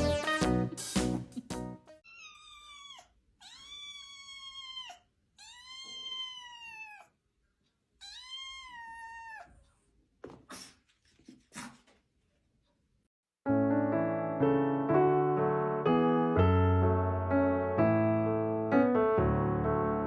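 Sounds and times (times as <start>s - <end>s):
cat meowing: 2.0s - 7.2s, 8.0s - 9.7s.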